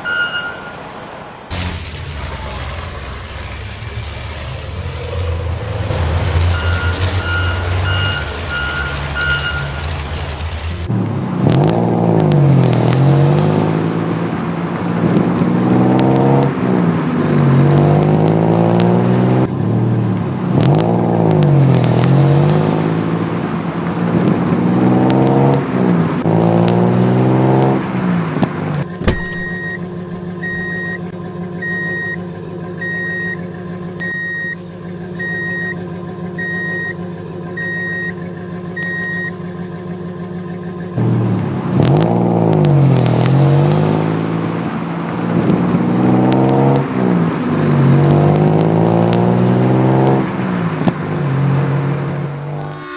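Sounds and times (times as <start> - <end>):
short high beeps: 0.0 - 0.8, 6.5 - 9.8, 29.2 - 29.8, 30.4 - 32.2, 32.8 - 33.4, 34.0 - 34.6, 35.2 - 35.8, 36.4 - 37.0, 37.6 - 38.2, 38.8 - 39.4
engine hum: 0.0 - 52.9
vehicle siren wailing: 4.5 - 10.0, 29.2 - 41.1, 52.5 - 52.9.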